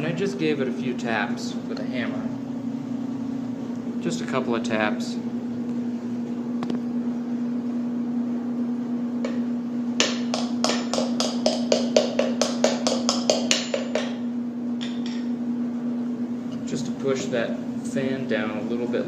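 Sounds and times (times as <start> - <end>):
hammer tapping plastic fan: 10.0 - 14.2.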